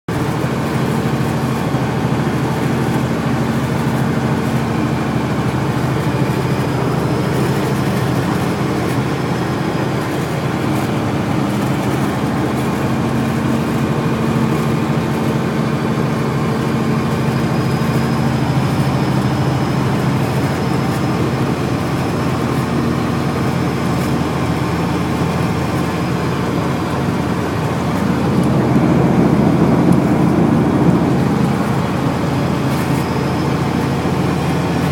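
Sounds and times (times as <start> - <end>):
road and blade noise: 0.1 - 34.9
snowplow truck engine: 0.1 - 34.9
faint high whine: 27.0 - 34.5.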